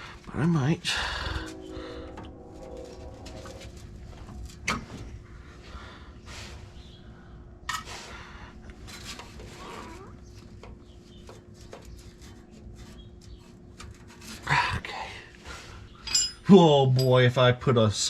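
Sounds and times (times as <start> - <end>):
steady low hum: 0.0 - 18.0
metal tools clinking and scraping: 15.9 - 17.3.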